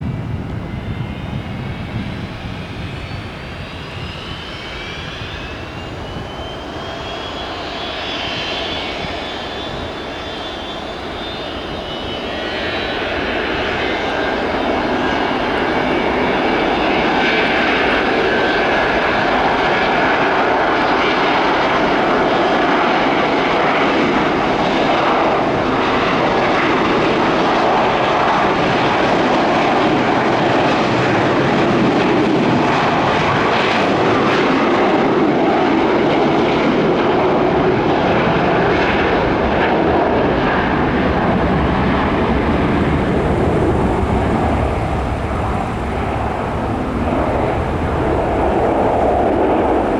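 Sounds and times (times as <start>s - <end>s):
faint engine whine: 0.0s - 26.6s, 37.5s - 49.9s
jet engines roaring at takeoff: 0.0s - 49.9s.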